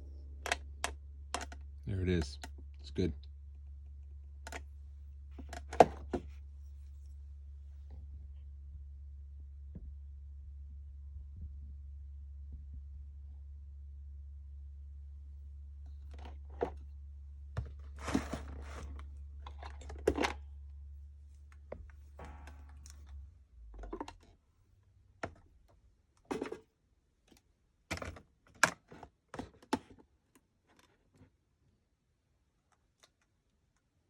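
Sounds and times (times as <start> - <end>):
low steady hum: 0.0 - 28.2
small parts clicking and tapping: 0.4 - 2.9.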